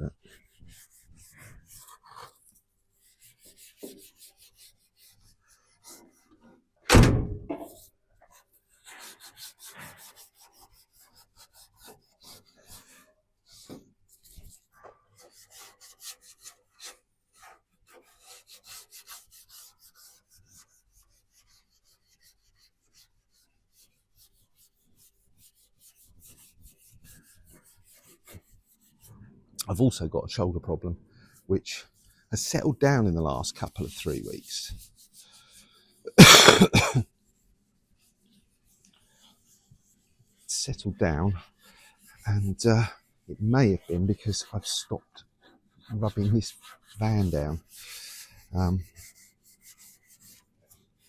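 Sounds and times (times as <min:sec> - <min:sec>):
abrasive pad scratching primer: 0:00.1 - 0:06.4, 0:07.6 - 0:29.1, 0:31.8 - 0:51.0
loud thump: 0:06.9 - 0:07.7.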